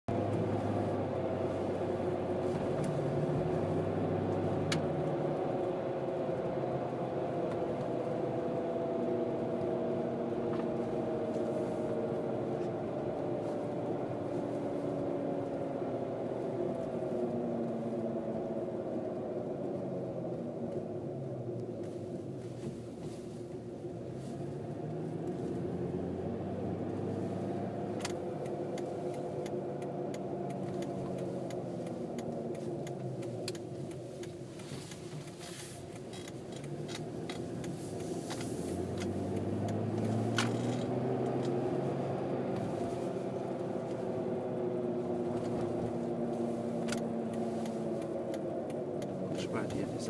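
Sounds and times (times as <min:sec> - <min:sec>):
vehicle rumble: 0:00.0 - 0:50.0.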